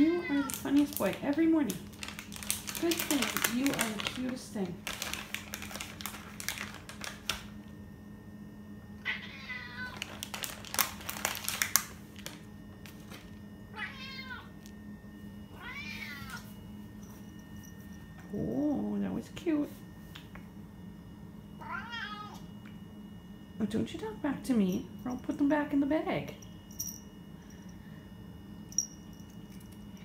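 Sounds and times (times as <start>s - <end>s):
treat bag clicking and rustling: 0.3s - 7.6s, 10.0s - 13.4s
cat meowing: 9.0s - 10.0s, 13.7s - 14.5s, 15.5s - 16.5s, 21.6s - 22.5s.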